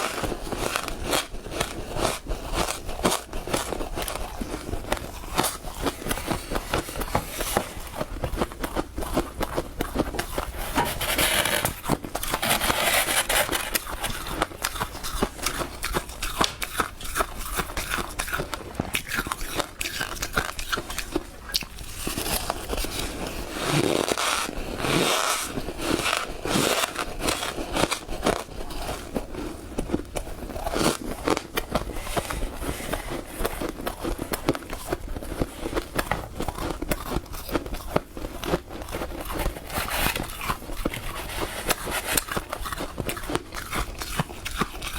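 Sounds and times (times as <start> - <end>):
frost being chewed crunching: 0.0 - 44.9.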